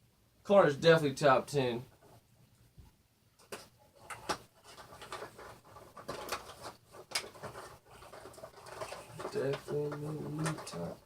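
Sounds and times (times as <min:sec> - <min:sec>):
rustling of cardboard and plastic box: 0:03.4 - 0:11.0.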